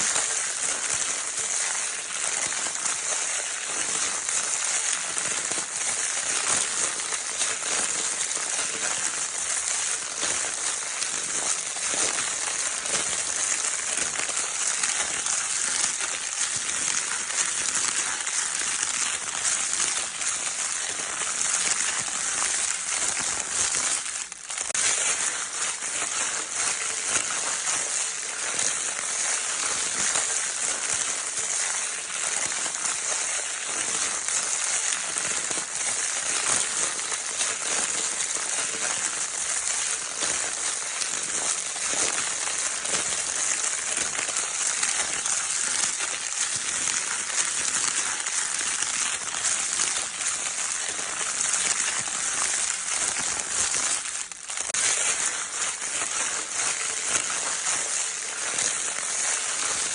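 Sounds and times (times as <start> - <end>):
crinkle paper rustling: 0.0 - 59.9.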